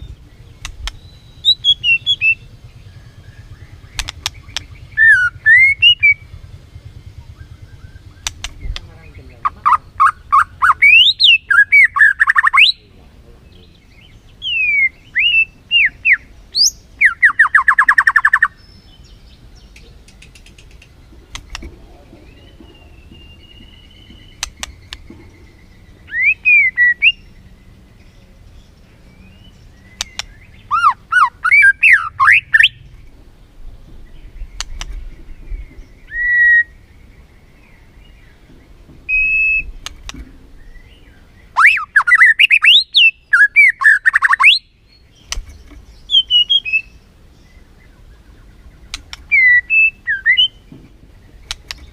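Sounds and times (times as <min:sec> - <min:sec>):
bird singing whistled phrases: 0:00.8 - 0:02.5, 0:03.3 - 0:06.2, 0:09.4 - 0:12.8, 0:14.0 - 0:18.6, 0:26.1 - 0:27.3, 0:29.2 - 0:32.8, 0:36.0 - 0:36.8, 0:39.1 - 0:39.8, 0:40.6 - 0:45.0, 0:46.0 - 0:47.0, 0:49.3 - 0:50.6.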